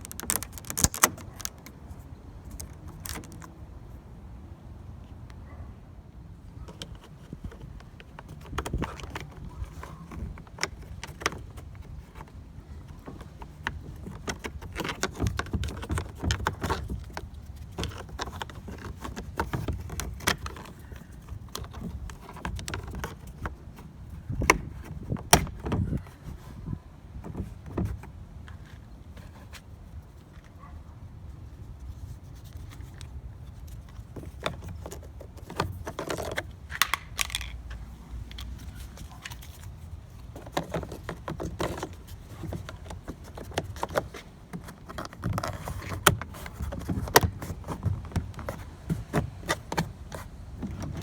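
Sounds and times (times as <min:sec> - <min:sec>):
tools and parts tapping: 0:33.9 - 0:51.0.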